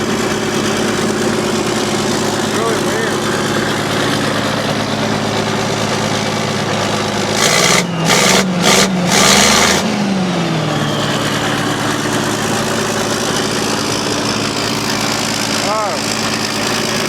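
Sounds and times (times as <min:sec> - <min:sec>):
loud hissing rush: 0:00.0 - 0:08.0
truck engine idling: 0:00.0 - 0:17.0.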